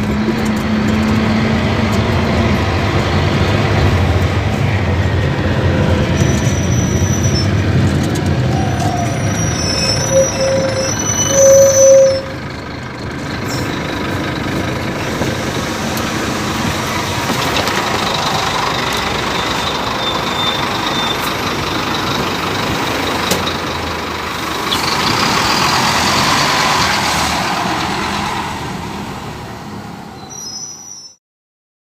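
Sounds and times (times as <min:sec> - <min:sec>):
bus diesel engine running: 0:00.0 - 0:31.0
loud tone: 0:08.5 - 0:12.4.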